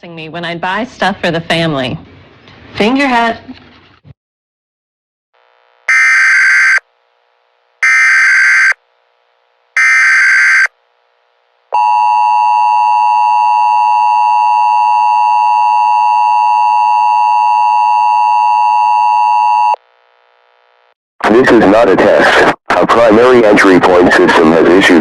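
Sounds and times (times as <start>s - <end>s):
warbling data tone bursts: 9.8s - 10.7s.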